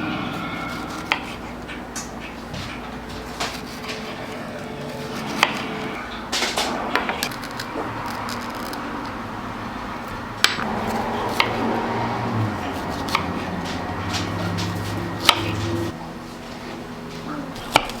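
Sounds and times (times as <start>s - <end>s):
kitchen utensils tapping: 10.4s - 15.9s.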